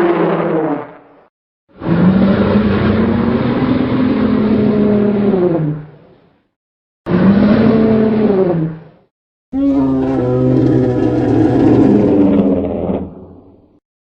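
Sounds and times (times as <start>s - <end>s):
dinosaur roar: 1.8s - 5.9s, 7.1s - 8.8s, 9.6s - 13.8s.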